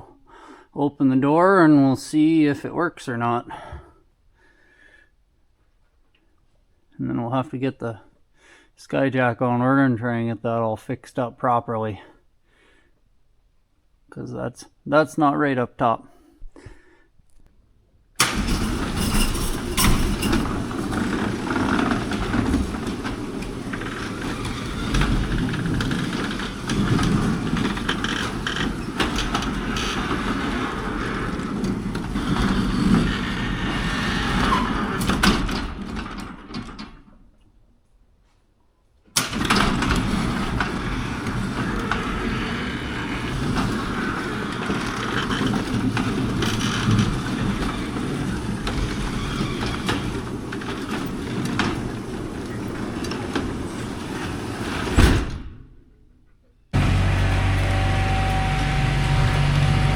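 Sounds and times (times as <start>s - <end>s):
garage door motor rumbling: 18.2s - 37.2s, 39.2s - 55.8s, 56.7s - 59.9s.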